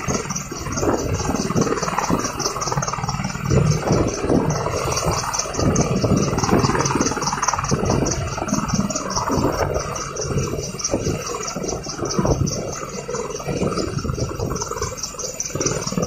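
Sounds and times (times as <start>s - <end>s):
helicopter engine and rotor: 0.0s - 16.0s
high-pitched pulsing chirp: 0.0s - 16.0s.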